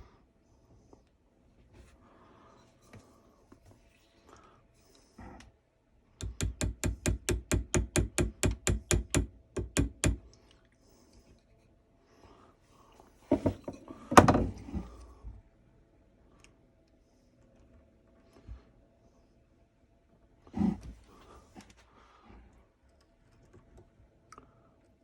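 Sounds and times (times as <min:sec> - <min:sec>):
mallet tapping chisel into wood: 0:06.2 - 0:10.2.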